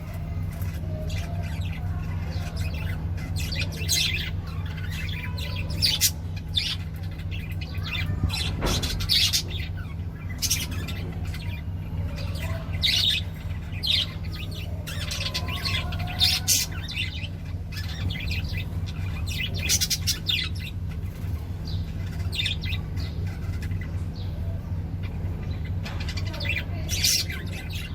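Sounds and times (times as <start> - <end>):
small birds chirping: 0.0 - 27.9
steady low hum: 0.0 - 27.9.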